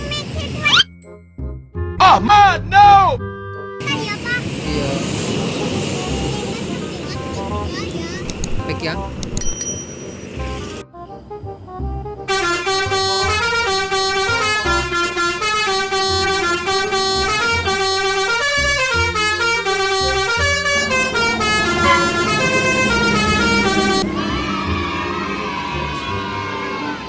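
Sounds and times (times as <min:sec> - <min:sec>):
multi-tone bus air horn tune: 0:10.5 - 0:27.0.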